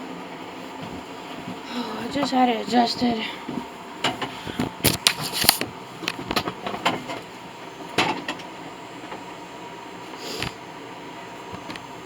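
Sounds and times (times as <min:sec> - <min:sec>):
background hum: 0:00.0 - 0:12.0.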